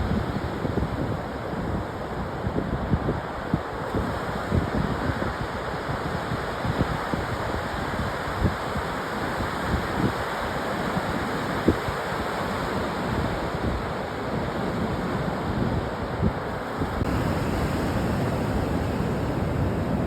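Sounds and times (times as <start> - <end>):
ocean surf on beach: 0.0 - 20.0
wind buffeting microphone: 12.7 - 20.0.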